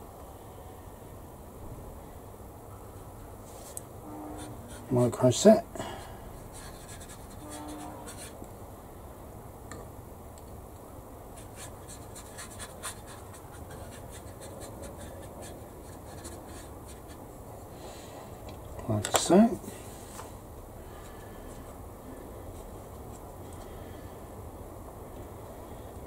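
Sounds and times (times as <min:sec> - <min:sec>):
faint scratching on plastic: 0:06.4 - 0:08.4, 0:11.4 - 0:17.3.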